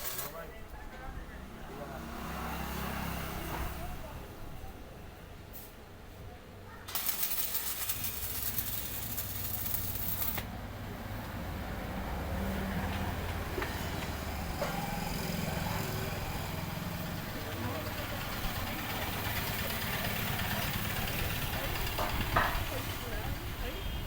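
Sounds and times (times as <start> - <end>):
welding arc crackling: 0.0 - 0.5, 6.9 - 10.5.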